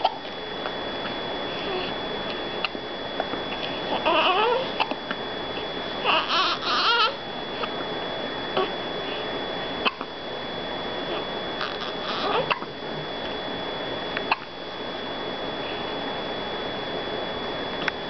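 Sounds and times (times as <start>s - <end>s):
baby fussing and crying: 3.9s - 5.0s, 6.0s - 7.2s, 11.6s - 12.6s
baby hiccups: 9.8s - 10.0s, 11.6s - 12.7s, 14.3s - 14.5s.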